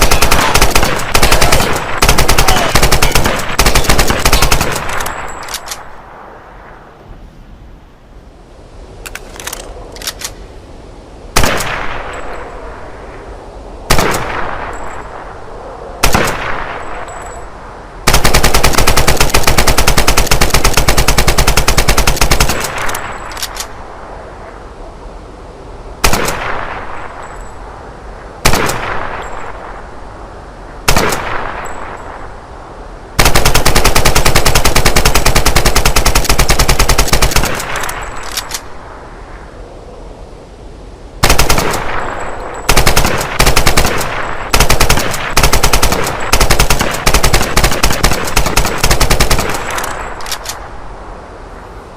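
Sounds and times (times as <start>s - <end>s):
rifle single shots: 30.9s - 31.9s.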